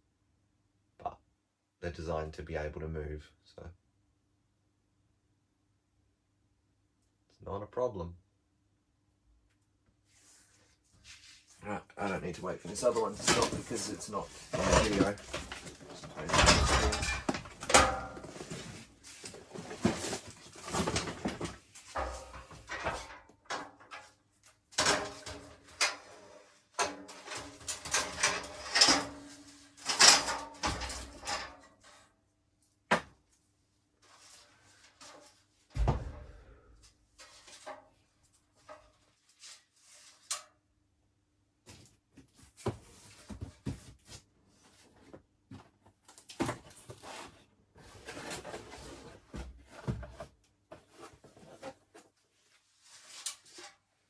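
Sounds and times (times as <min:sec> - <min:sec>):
items knocking and clattering: 0:12.7 - 0:26.2, 0:26.8 - 0:31.8, 0:32.9 - 0:33.2, 0:35.8 - 0:38.0
heavy thump: 0:35.8 - 0:36.9.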